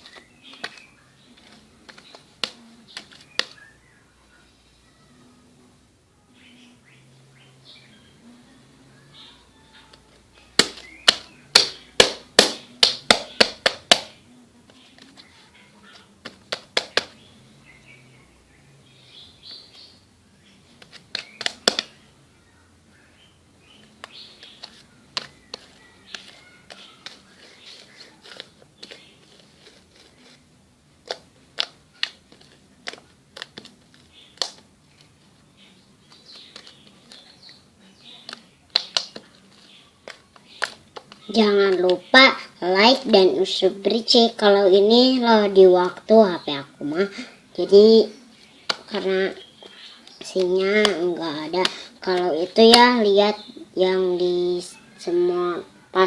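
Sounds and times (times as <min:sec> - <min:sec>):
faint bird chirps: 0:00.0 - 0:12.0, 0:17.1 - 0:30.4, 0:46.3 - 0:50.8, 0:52.3 - 0:56.0.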